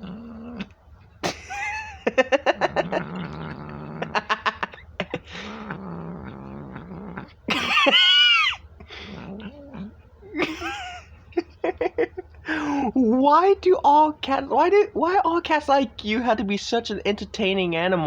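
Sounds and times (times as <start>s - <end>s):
cat growling while eating: 0.0s - 12.2s
cat yowling: 7.5s - 8.7s.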